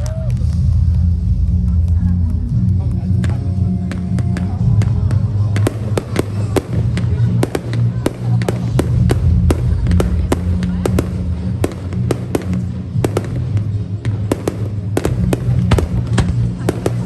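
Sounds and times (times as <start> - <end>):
fireworks cracks and bangs: 0.0 - 17.0
low rumble: 0.0 - 17.0.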